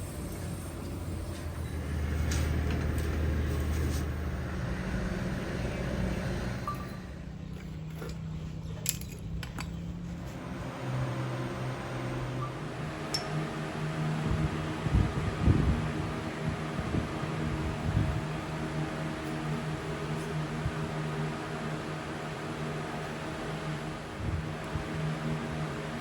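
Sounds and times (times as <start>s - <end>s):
electric motor humming: 0.0s - 7.5s, 10.2s - 26.0s.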